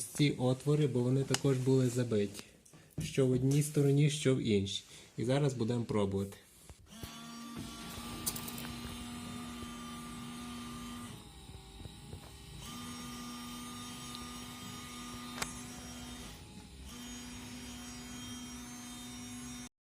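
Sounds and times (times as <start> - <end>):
washer pump motor humming: 6.9 - 19.6.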